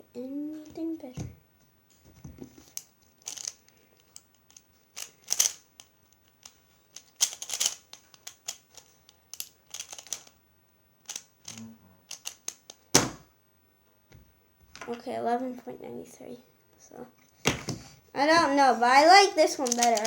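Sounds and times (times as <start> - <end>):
plastic puzzle clicks and clacks: 2.6 - 10.3, 11.1 - 13.1, 19.2 - 20.0.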